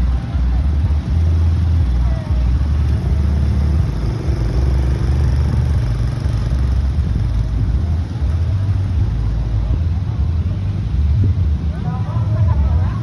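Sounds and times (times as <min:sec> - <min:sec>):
heavy uneven low rumble: 0:00.0 - 0:13.0
small atv engine running: 0:01.9 - 0:07.7.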